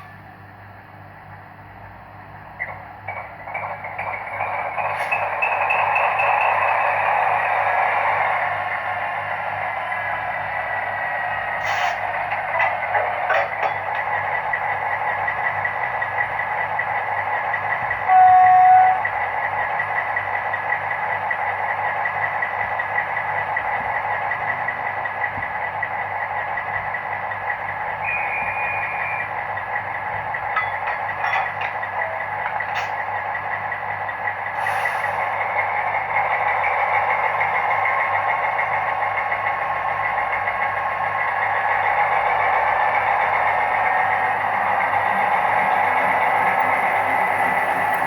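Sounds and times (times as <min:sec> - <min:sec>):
diesel locomotive engine through small speaker: 0:00.0 - 0:48.0.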